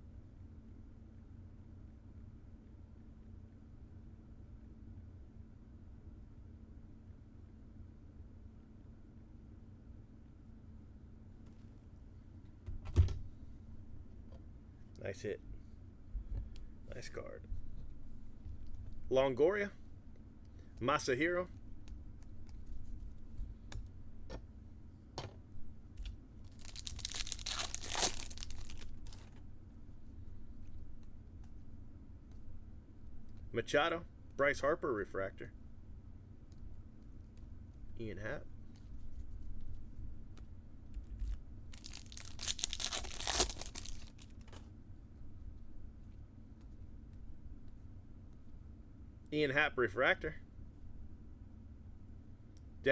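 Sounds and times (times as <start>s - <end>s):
wrapper being torn open: 26.0s - 29.4s, 41.2s - 44.7s.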